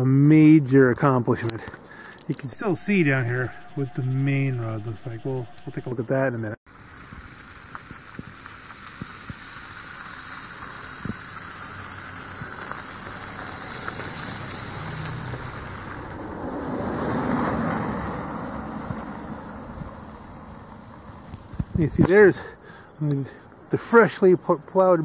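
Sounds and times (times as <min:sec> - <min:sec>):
wind blowing: 0:02.2 - 0:06.4.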